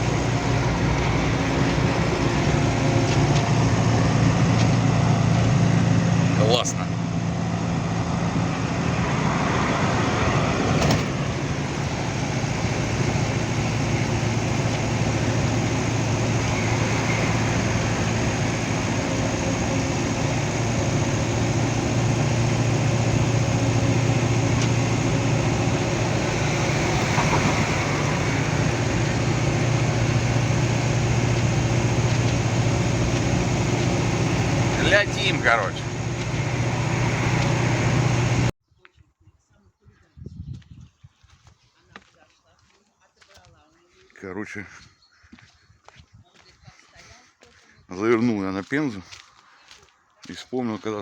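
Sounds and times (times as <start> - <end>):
truck engine drone: 0.0 - 38.5
road noise: 0.0 - 38.6.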